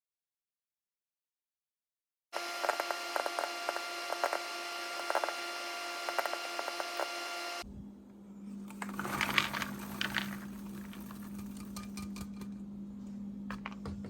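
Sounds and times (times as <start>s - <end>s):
steady low hum: 3.8s - 14.0s
popcorn rattling: 8.7s - 12.5s.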